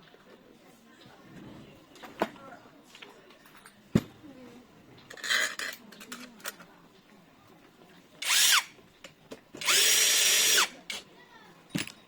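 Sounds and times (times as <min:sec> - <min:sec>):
power driver motor whirring: 0:09.6 - 0:10.7.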